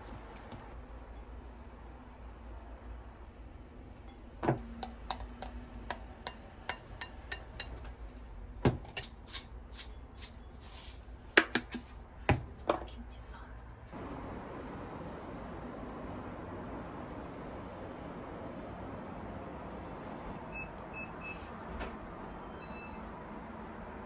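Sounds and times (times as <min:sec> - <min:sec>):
dishes and utensils clinking: 0:04.0 - 0:11.9.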